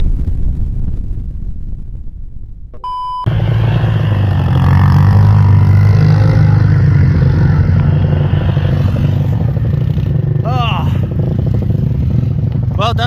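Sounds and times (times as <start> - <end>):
short electronic beep: 2.8 - 3.3
vehicle engine running loudly: 3.3 - 13.0.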